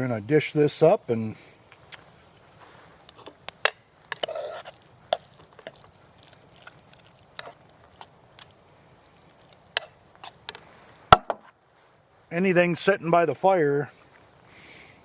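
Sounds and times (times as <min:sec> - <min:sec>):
spoon scraping metal pot: 0:04.1 - 0:05.8.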